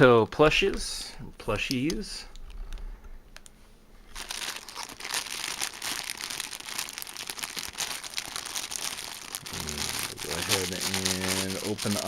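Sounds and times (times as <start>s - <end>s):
packaging crinkling and rustling: 3.4s - 12.0s.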